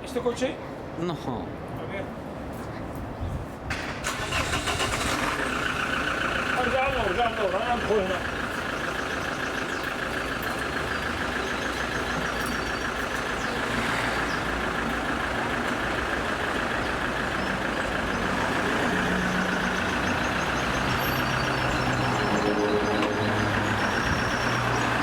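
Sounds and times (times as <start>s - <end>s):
traffic and engine noise: 0.0s - 25.0s
deep engine note: 17.6s - 25.0s.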